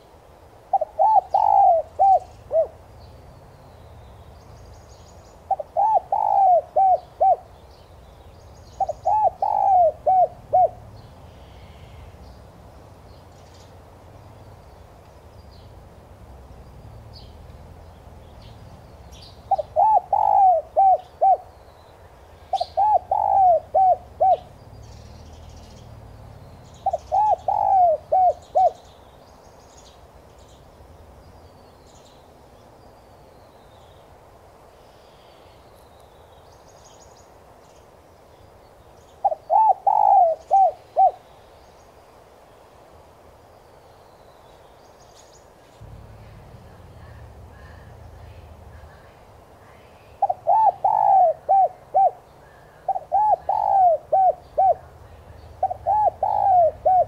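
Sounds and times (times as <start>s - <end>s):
dove cooing: 0.7s - 2.9s, 5.5s - 7.6s, 8.8s - 12.2s, 19.5s - 21.5s, 22.5s - 24.6s, 26.8s - 28.8s, 39.2s - 41.2s, 50.2s - 57.0s.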